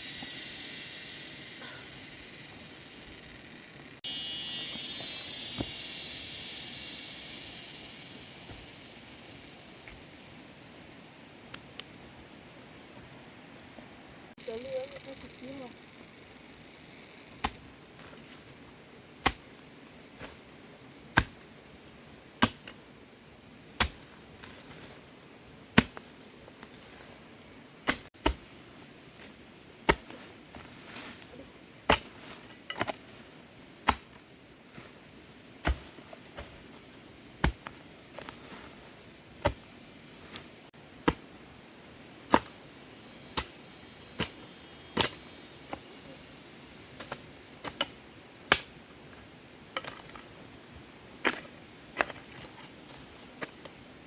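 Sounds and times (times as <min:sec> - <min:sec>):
faint insect hum: 0:00.0 - 0:54.0
hand tool striking wood: 0:05.5 - 0:05.8, 0:31.9 - 0:33.0.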